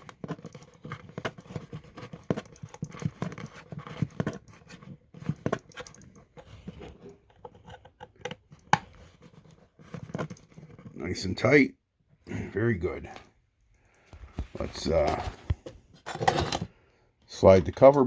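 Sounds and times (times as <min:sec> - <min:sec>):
screwdriver clicking and scraping metal: 0:00.0 - 0:10.9.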